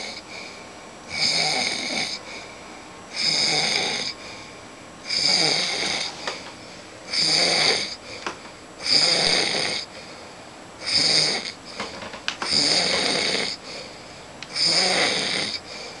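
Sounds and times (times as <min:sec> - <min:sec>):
man snoring loudly: 0:00.0 - 0:00.2, 0:01.1 - 0:02.2, 0:03.1 - 0:04.2, 0:05.1 - 0:06.1, 0:07.1 - 0:08.0, 0:08.8 - 0:09.9, 0:10.8 - 0:11.6, 0:12.5 - 0:13.6, 0:14.5 - 0:15.7.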